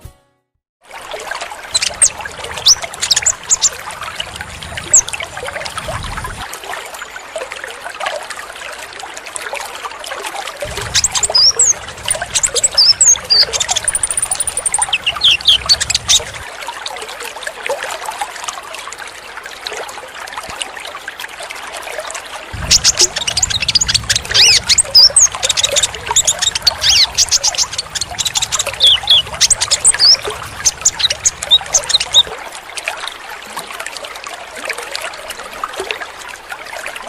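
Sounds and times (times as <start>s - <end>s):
trickle of running water: 0.8s - 37.0s
sunbird chirps and twitters: 1.7s - 5.9s, 10.7s - 16.4s, 22.6s - 32.4s.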